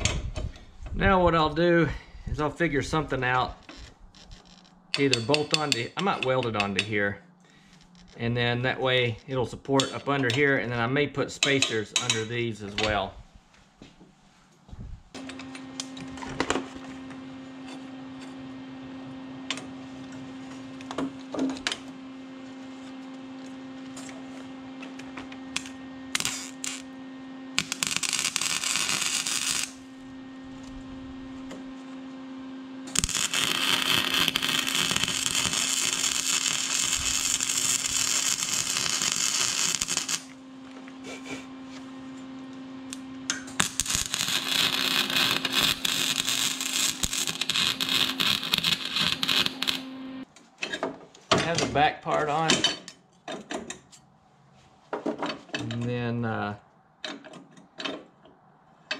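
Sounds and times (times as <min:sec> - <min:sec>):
steady hum: 0:00.0 - 0:50.3
harsh hissing tool noise: 0:25.5 - 0:30.0, 0:32.9 - 0:41.8, 0:42.9 - 0:50.0.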